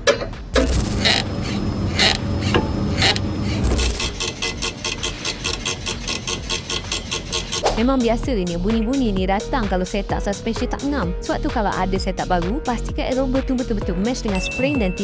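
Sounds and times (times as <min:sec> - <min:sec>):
fast even rattle: 0:00.6 - 0:07.7
suspension rasping creak: 0:00.6 - 0:07.7.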